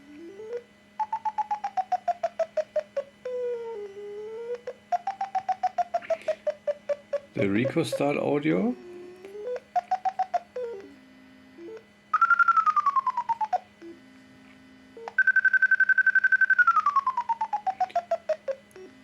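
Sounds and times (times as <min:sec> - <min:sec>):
steady electronic tones: 0:00.0 - 0:14.2
rapid electronic beeps: 0:07.3 - 0:08.2.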